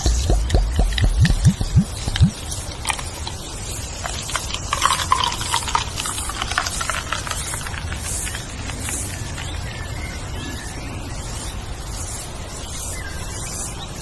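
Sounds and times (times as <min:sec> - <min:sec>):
scattered clicks: 0:00.0 - 0:03.2
leaves rustling in wind: 0:01.0 - 0:14.0.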